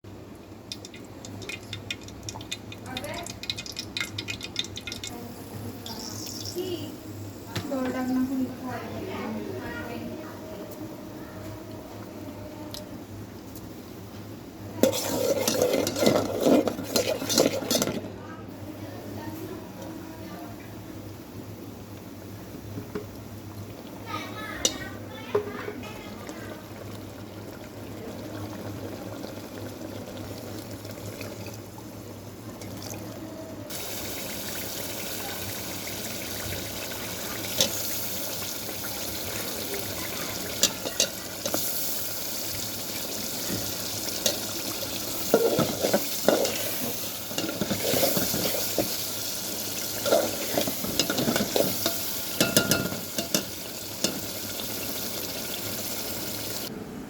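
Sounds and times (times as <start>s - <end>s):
food sizzling in a pan: 0.7s - 10.5s, 14.6s - 56.7s
utensil scraping a pan: 14.8s - 18.1s, 43.4s - 54.3s.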